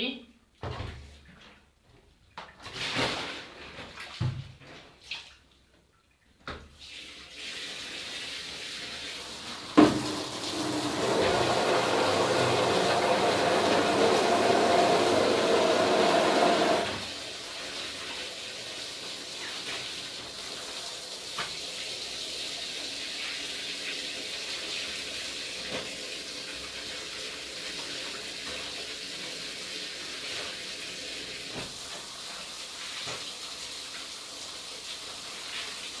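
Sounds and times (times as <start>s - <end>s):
hiss of handwashing laundry: 6.7s - 36.0s
water pouring into a container: 7.2s - 31.5s.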